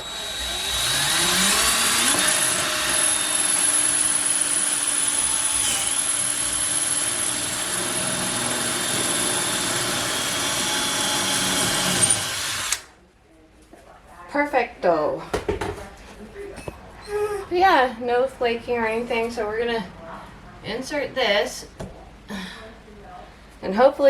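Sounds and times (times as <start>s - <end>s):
electric drill boring through tile: 0.0s - 12.8s.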